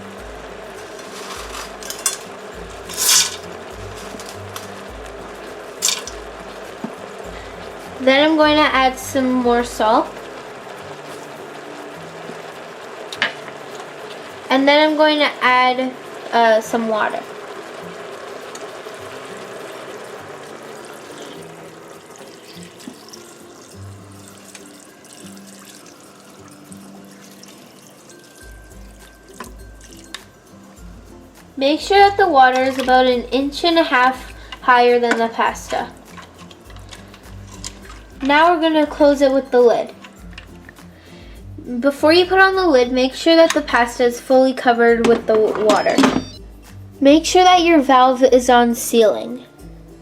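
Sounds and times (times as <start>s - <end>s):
dry noodles rattling into pot: 0.0s - 8.0s, 32.5s - 39.2s
background music with bass: 0.0s - 18.4s, 28.5s - 50.0s
water pouring into a pot: 0.0s - 47.0s.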